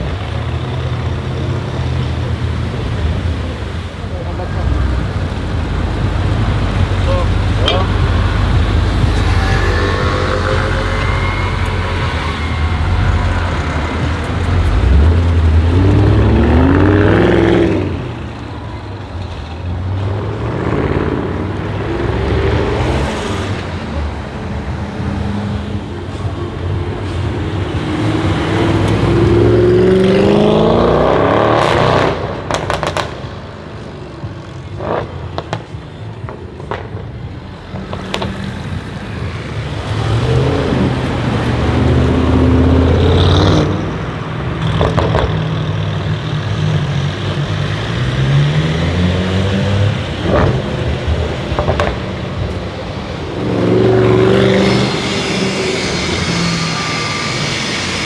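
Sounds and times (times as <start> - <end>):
car engine accelerating hard: 0.0 - 58.0
exhaust crackles and pops: 31.6 - 33.9, 44.6 - 46.1, 50.1 - 53.2.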